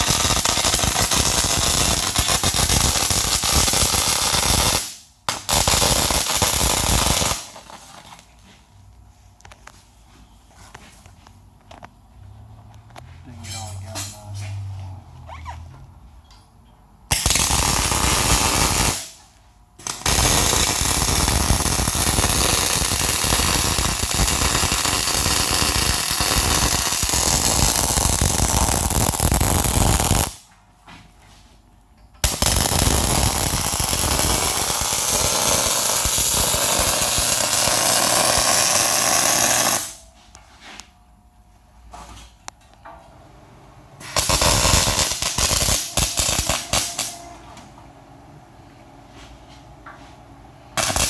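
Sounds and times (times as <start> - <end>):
arc welding crackle: 0.0 - 8.5, 17.1 - 30.5, 32.2 - 40.0, 44.0 - 47.4, 50.8 - 51.0.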